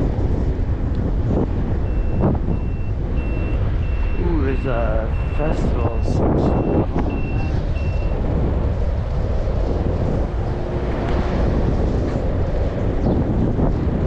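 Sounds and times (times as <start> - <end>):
wind and road rumble: 0.0 - 14.0
high electronic warning beep: 1.9 - 8.2.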